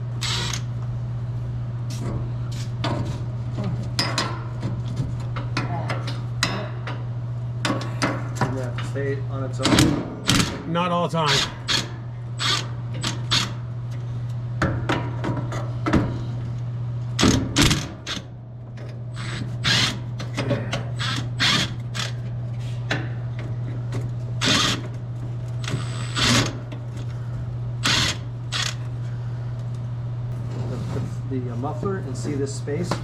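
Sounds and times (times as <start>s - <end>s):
steady low hum: 0.0s - 33.0s
power tool high whine: 0.2s - 0.6s.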